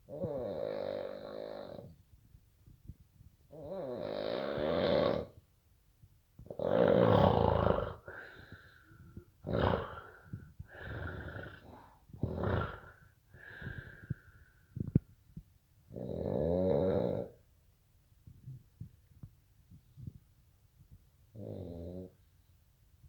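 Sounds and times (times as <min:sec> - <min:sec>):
loud whistling snoring: 0:09.5 - 0:10.1, 0:10.8 - 0:12.9.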